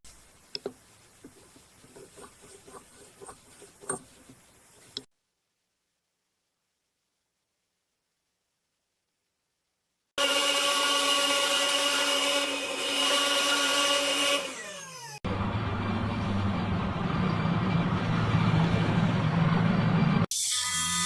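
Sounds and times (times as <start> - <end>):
low rumbling motor drone: 15.3 - 20.3.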